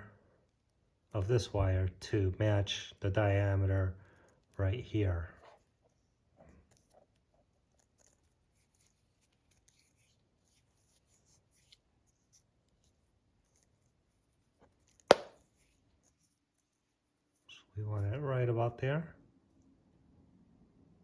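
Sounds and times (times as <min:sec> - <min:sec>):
handling cable and sleeve: 0:05.3 - 0:17.5.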